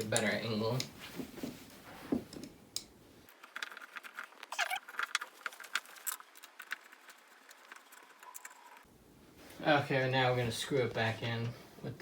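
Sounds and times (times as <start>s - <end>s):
small parts clicking and rattling: 2.3s - 8.9s.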